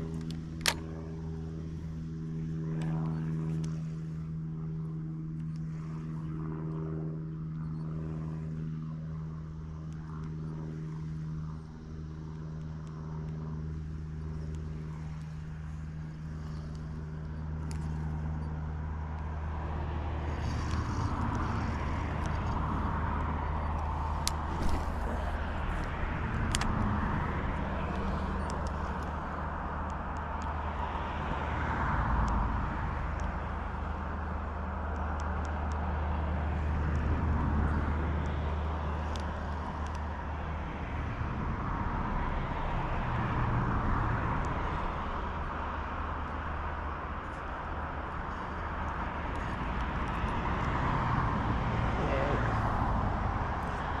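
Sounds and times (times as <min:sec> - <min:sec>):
engine humming: 0:00.0 - 0:54.0
broad rushing noise: 0:19.3 - 0:30.8.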